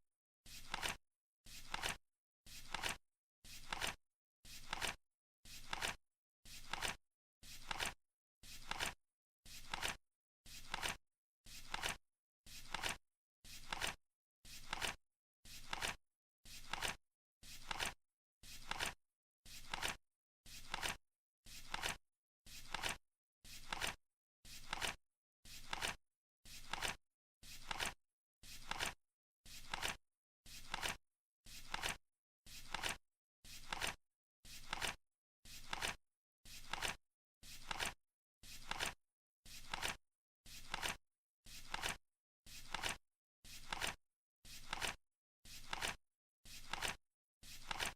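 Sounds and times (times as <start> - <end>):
flip clock card flapping: 0.6 - 1.0, 1.6 - 2.0, 2.6 - 3.0, 3.6 - 4.0, 4.6 - 5.0, 5.6 - 6.0, 6.6 - 7.0, 7.6 - 8.0, 8.6 - 9.0, 9.6 - 10.0, 10.6 - 11.0, 11.7 - 12.0, 12.7 - 13.0, 13.6 - 14.0, 14.6 - 15.0, 15.6 - 16.0, 16.6 - 17.0, 17.6 - 18.0, 18.6 - 19.0, 19.6 - 20.0, 20.6 - 21.0, 21.7 - 22.0, 22.7 - 23.0, 23.6 - 24.0, 24.6 - 25.0, 25.6 - 26.0, 26.6 - 27.0, 27.6 - 28.0, 28.6 - 29.0, 29.6 - 30.0, 30.6 - 31.0, 31.7 - 32.0, 32.7 - 33.0, 33.6 - 34.0, 34.6 - 35.0, 35.6 - 36.0, 36.6 - 37.0, 37.6 - 38.0, 38.6 - 39.0, 39.6 - 40.0, 40.6 - 41.0, 41.7 - 42.0, 42.7 - 43.0, 43.6 - 44.0, 44.6 - 45.0, 45.6 - 46.0, 46.6 - 47.0, 47.6 - 47.9.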